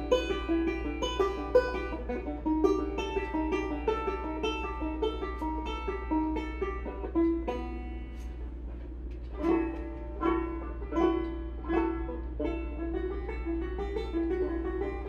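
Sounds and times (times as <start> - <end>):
plucked string instrument music: 0.0 - 15.0.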